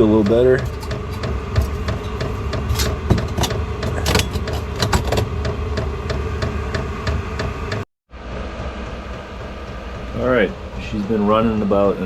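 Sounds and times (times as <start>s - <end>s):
air heater humming: 0.0s - 7.8s.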